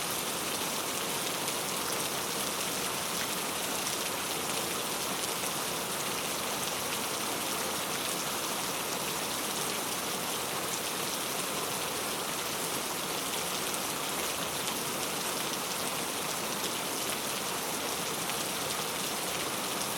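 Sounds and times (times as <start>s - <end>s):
heavy rain falling: 0.0s - 19.9s.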